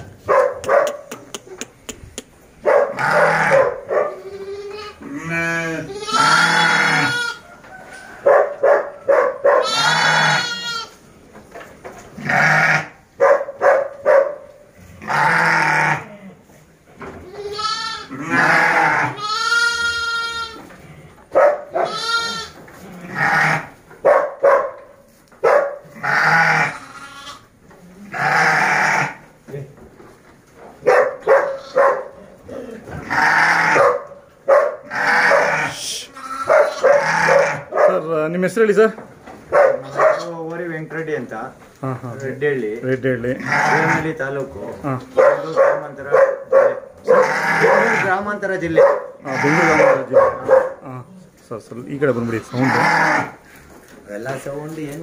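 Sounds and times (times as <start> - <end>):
sheep bleating: 3.0 - 7.4, 9.6 - 11.0, 12.2 - 13.0, 15.0 - 16.1, 17.3 - 20.7, 21.7 - 23.7, 26.0 - 27.5, 28.1 - 29.2, 31.5 - 32.0, 33.0 - 33.8, 34.9 - 37.7, 43.4 - 44.2, 47.1 - 48.2, 49.2 - 50.0, 52.2 - 53.4.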